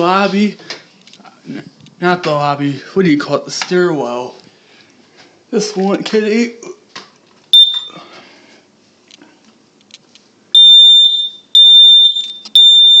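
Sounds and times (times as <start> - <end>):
alarm chirp: 7.6 - 8.0, 10.6 - 13.0
high-pitched alarm beeps: 7.6 - 8.0, 10.6 - 13.0.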